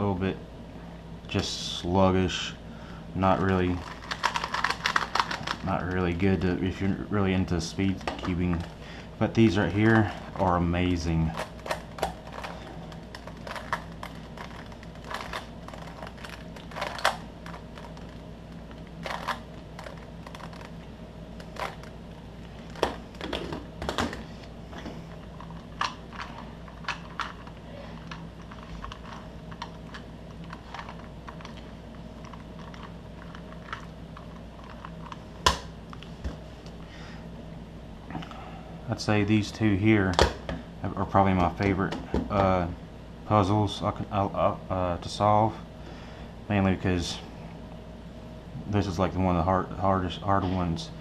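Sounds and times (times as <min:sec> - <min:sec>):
faint steady hum: 0:00.0 - 0:51.0.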